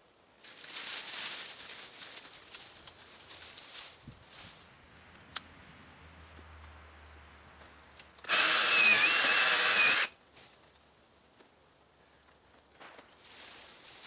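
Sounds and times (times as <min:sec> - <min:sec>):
reciprocating saw whine: 0:04.6 - 0:10.1.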